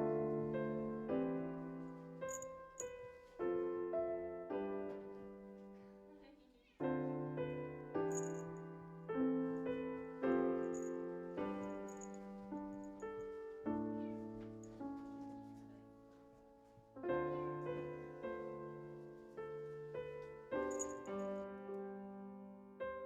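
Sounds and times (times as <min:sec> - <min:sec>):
slow piano chords: 0:00.0 - 0:23.0.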